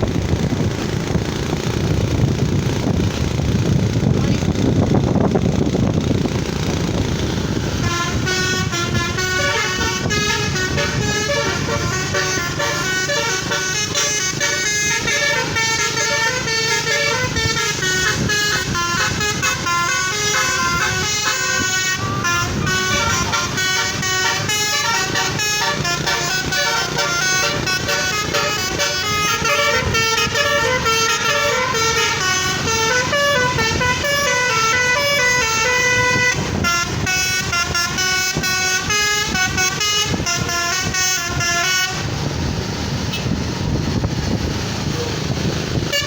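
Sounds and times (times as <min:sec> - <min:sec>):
bus engine rumble: 0:00.0 - 0:46.0
multi-tone air horn tune: 0:07.8 - 0:42.2.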